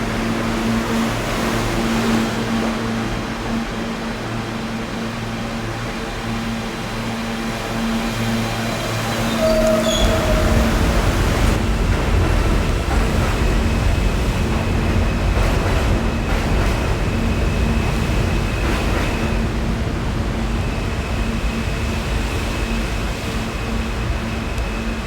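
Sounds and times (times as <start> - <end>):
subway train rumbling: 0.0 - 25.0.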